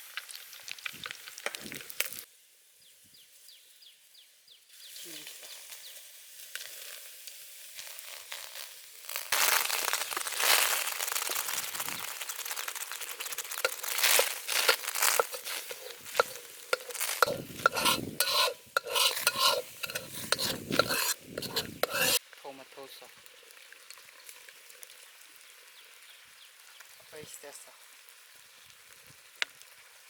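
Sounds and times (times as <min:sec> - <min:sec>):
food deep-frying in oil: 0:00.0 - 0:02.3, 0:04.7 - 0:30.0
faint hiss: 0:00.0 - 0:30.0
utensil scraping a pan: 0:12.0 - 0:22.2.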